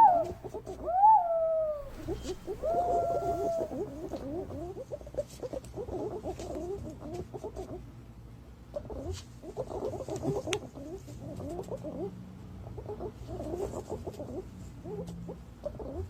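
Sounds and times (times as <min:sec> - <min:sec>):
pigeon whistling call: 0:00.0 - 0:04.6.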